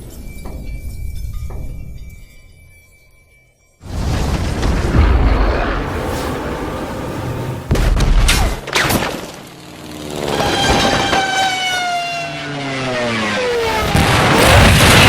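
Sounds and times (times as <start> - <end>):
crashing impacts: 3.8 - 9.4.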